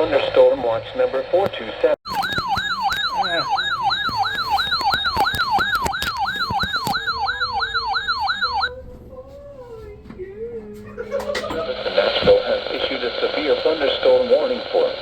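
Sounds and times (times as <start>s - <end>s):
electronic siren warble: 2.1s - 8.8s.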